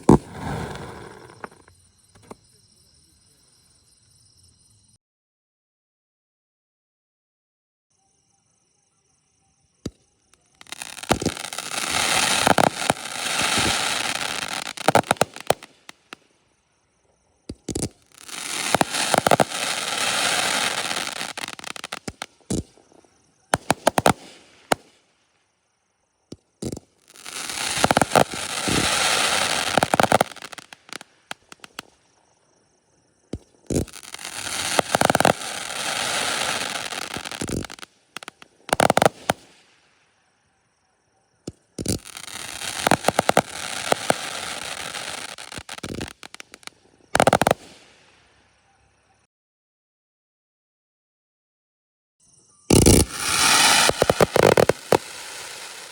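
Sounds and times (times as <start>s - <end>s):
fireworks cracking and crackling: 0.0s - 2.4s, 10.6s - 16.2s, 17.5s - 25.1s, 26.6s - 32.0s, 33.3s - 39.7s, 41.5s - 48.0s, 52.7s - 55.9s
fireworks hissing: 0.0s - 2.4s, 10.6s - 16.2s, 17.5s - 22.7s, 23.5s - 25.0s, 26.6s - 31.9s, 33.4s - 39.8s, 41.8s - 48.0s, 52.7s - 55.9s.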